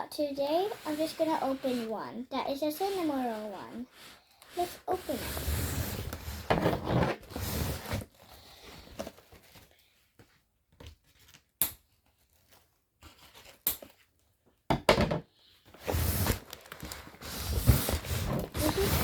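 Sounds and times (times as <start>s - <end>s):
plastic bag crinkling and tearing: 15.8s - 19.0s.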